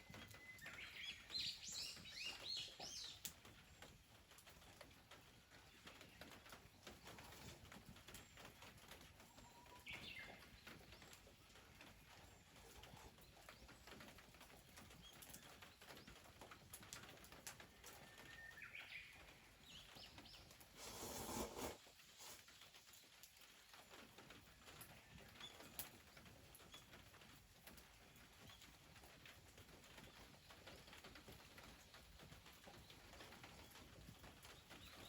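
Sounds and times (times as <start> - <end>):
bird chirps: 0.1 - 3.2.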